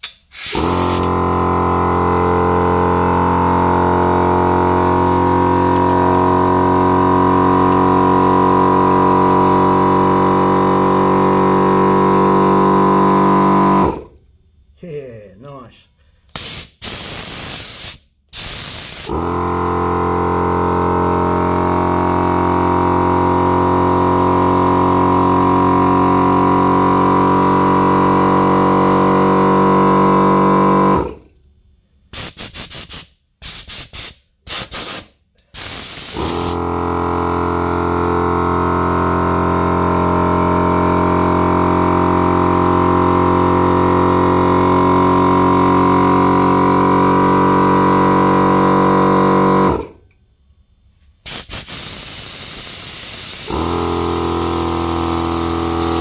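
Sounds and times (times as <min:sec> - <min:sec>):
air blow gun hissing blasts: 0:00.0 - 0:14.1, 0:16.3 - 0:19.4, 0:32.1 - 0:36.6, 0:51.2 - 0:56.0
air compressor motor running: 0:00.0 - 0:56.0.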